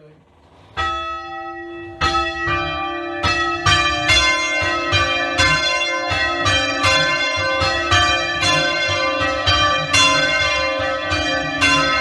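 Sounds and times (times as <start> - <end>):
church bells ringing: 0.0 - 12.0.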